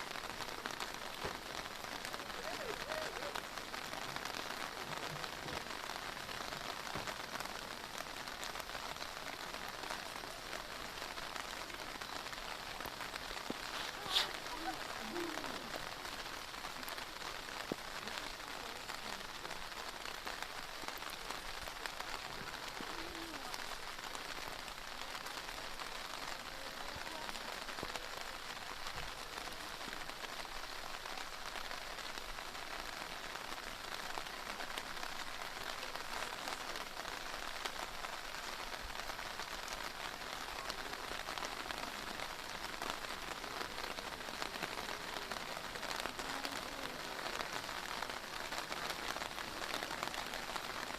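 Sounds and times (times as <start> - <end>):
heavy rain falling: 0.0 - 50.9.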